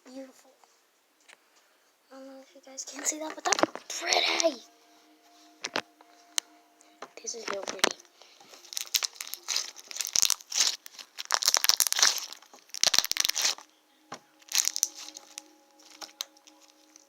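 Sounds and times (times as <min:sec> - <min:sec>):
slime crackling and popping: 0:07.3 - 0:13.6, 0:14.4 - 0:17.0.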